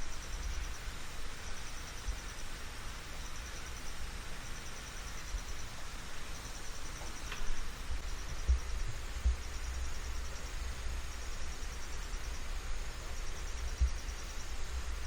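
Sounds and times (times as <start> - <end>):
insects trilling: 0.0 - 15.0
steady hiss: 0.0 - 15.0
low thumps on microphone: 7.0 - 10.1.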